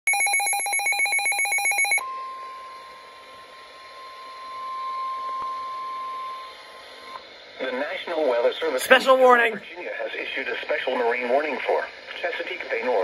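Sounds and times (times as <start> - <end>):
steady high beep: 0.1 - 2.0.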